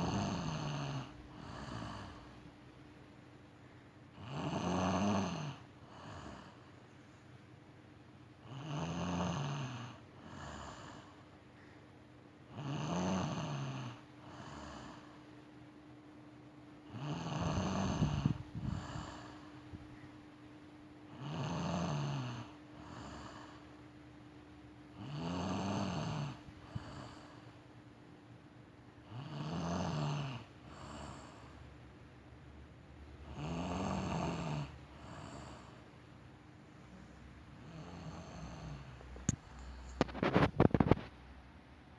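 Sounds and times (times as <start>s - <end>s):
woman snoring: 0.0s - 2.3s, 4.2s - 6.6s, 8.4s - 11.2s, 12.5s - 15.1s, 16.9s - 19.8s, 21.1s - 23.7s, 25.0s - 27.4s, 29.0s - 31.5s, 33.2s - 35.8s, 37.6s - 40.0s.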